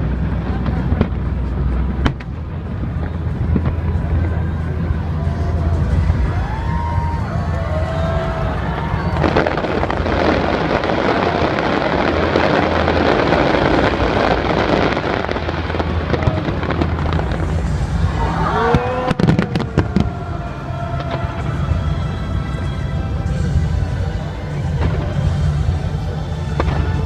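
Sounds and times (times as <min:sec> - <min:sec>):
firework bangs: 0:00.0 - 0:27.0
fireworks crackling: 0:00.0 - 0:27.0
firework whistles: 0:02.9 - 0:27.0.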